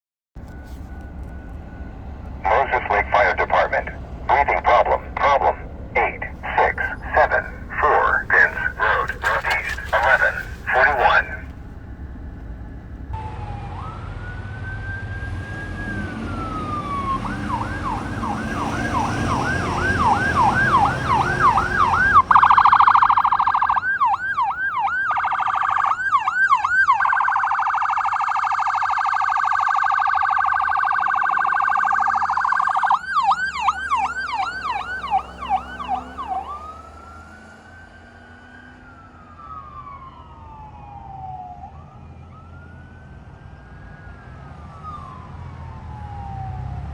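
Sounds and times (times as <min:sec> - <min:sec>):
low engine rumble: 0:00.4 - 0:13.2, 0:15.2 - 0:24.0
emergency vehicle sirens: 0:00.4 - 0:46.9.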